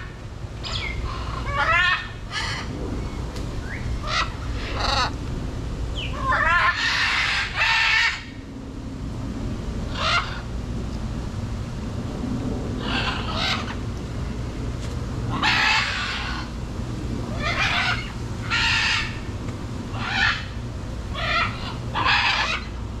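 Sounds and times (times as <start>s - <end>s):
macaws squawking: 0.6s - 2.7s, 4.0s - 5.2s, 6.0s - 8.4s, 9.9s - 10.5s, 12.8s - 13.8s, 15.3s - 16.6s, 17.3s - 19.3s, 19.9s - 22.8s
low rumble: 2.1s - 7.6s.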